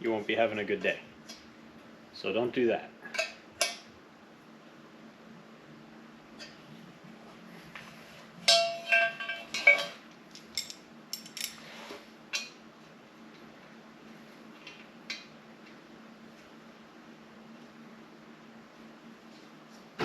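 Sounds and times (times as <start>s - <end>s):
metal studs and wrench clinking: 8.5s - 11.6s.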